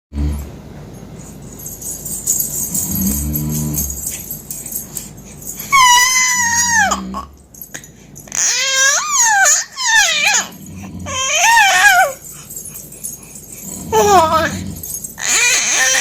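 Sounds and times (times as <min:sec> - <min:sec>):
baby squealing: 0:05.7 - 0:07.0, 0:08.3 - 0:12.2, 0:15.2 - 0:16.0.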